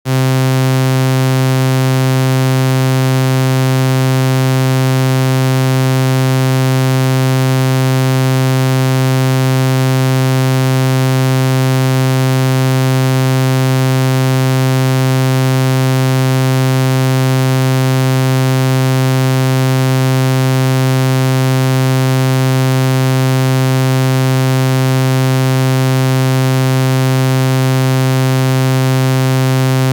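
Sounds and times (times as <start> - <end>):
low electronic buzzing tone: 0.0 - 29.9.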